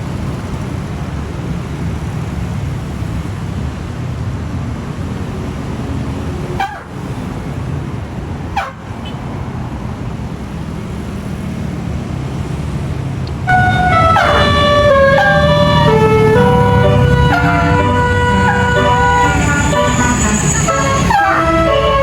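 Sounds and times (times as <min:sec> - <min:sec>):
bus engine and road rumble: 0:00.0 - 0:22.0
musical air horn tune: 0:13.5 - 0:22.0.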